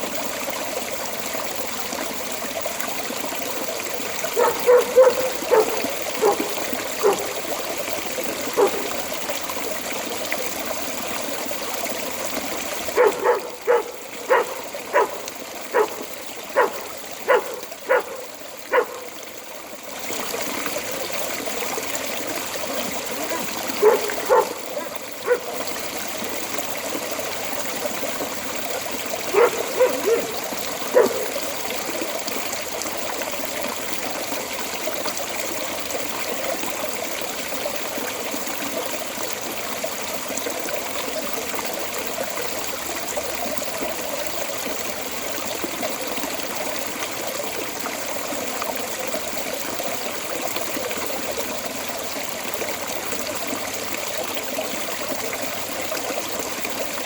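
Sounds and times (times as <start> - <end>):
water trickling from drain: 0.0 - 57.0
dog barking: 4.3 - 7.3, 8.5 - 8.9, 12.9 - 19.2, 23.2 - 25.6, 29.3 - 31.4.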